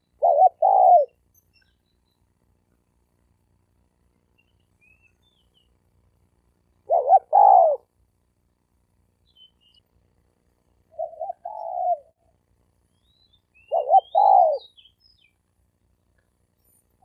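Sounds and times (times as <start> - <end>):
dove cooing: 0.0 - 1.2, 6.8 - 7.9, 10.9 - 12.2, 13.7 - 14.7
small bird chirping: 0.0 - 2.4, 4.2 - 5.8, 9.2 - 10.0, 10.9 - 15.5.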